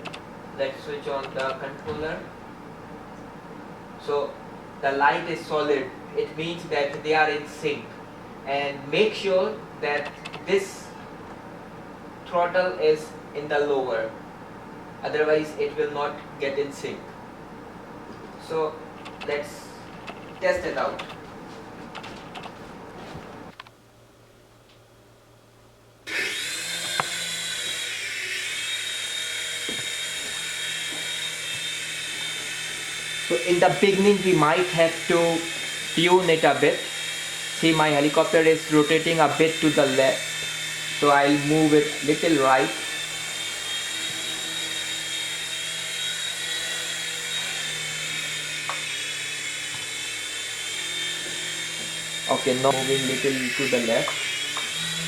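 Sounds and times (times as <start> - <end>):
toy helicopter motors whining: 26.1 - 55.0.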